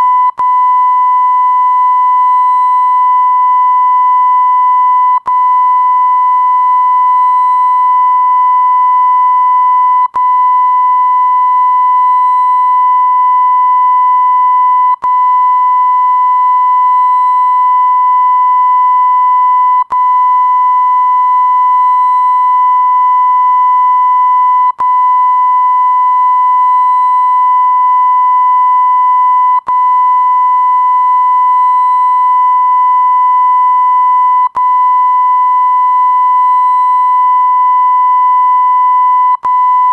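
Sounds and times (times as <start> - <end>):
steady pure tone bleep: 0.0 - 39.9
click: 39.4 - 39.6.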